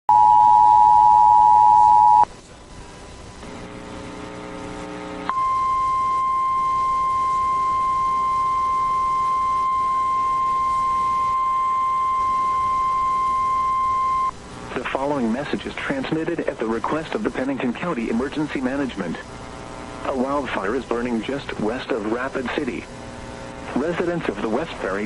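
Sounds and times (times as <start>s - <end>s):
steady warning alarm tone: 0.1s - 2.3s, 5.3s - 14.3s.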